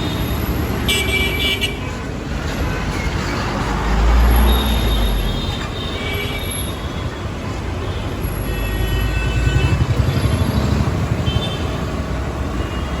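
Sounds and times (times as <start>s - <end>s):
vehicle engine rumble: 9.0s - 12.8s.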